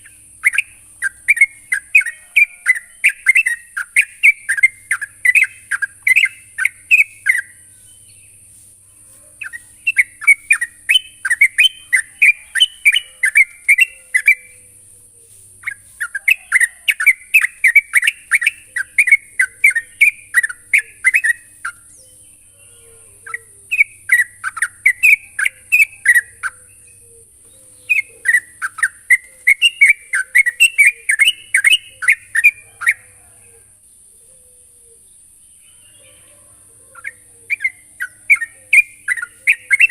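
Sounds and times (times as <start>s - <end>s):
bird bubbling chattering song: 0.0s - 8.4s, 9.4s - 22.3s, 23.2s - 33.1s, 37.0s - 39.9s
steady high hiss: 0.0s - 22.6s.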